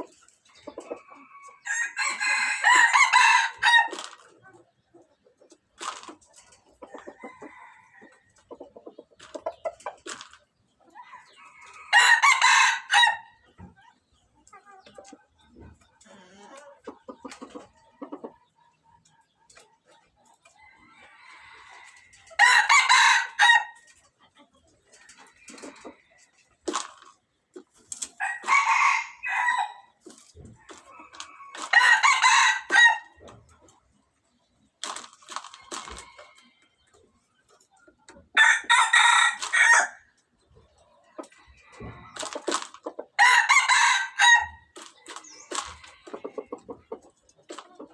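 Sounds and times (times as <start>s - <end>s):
rooster clucking: 0.0s - 10.2s, 10.8s - 20.0s, 28.1s - 34.0s, 37.8s - 40.0s, 40.6s - 47.9s
rooster crowing: 1.6s - 3.9s, 11.8s - 13.2s, 28.2s - 29.8s, 31.7s - 33.0s, 43.2s - 44.6s.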